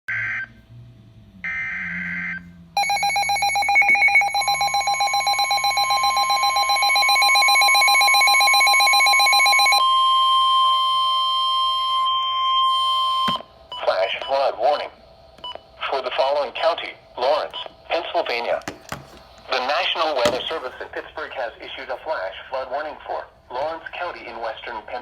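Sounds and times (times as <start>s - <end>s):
pulsing alarm tone: 1.5s - 13.4s
steady alarm tone: 1.5s - 13.9s.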